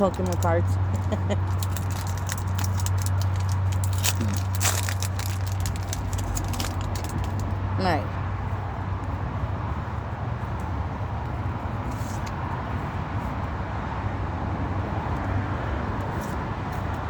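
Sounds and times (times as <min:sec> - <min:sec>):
trading cards rustling: 0:00.0 - 0:07.6
low background rumble and hum: 0:00.0 - 0:17.0.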